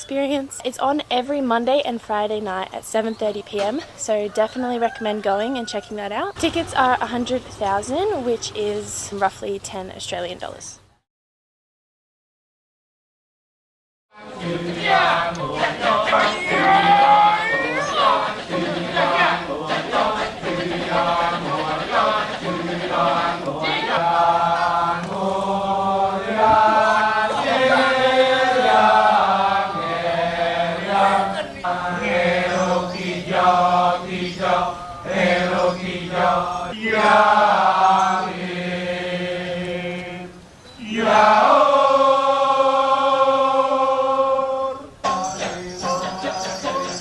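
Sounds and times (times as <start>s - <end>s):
chorus chanting: 14.1s - 47.0s.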